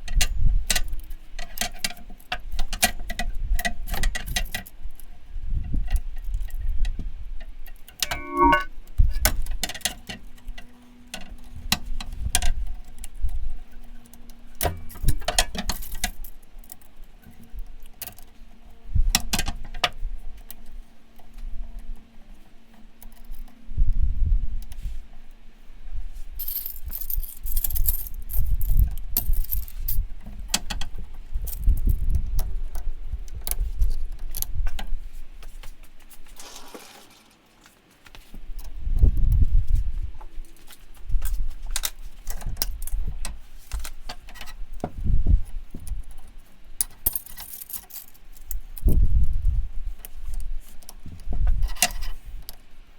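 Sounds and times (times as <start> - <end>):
metal tools clinking: 8.0 - 8.7.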